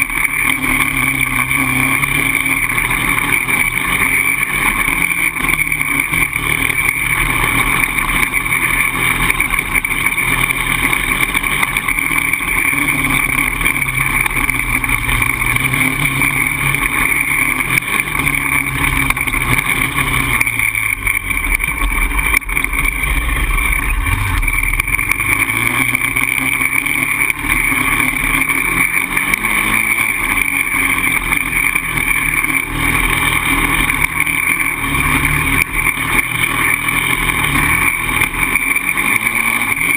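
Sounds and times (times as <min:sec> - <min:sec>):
quad engine revving: 0:00.0 - 0:39.9.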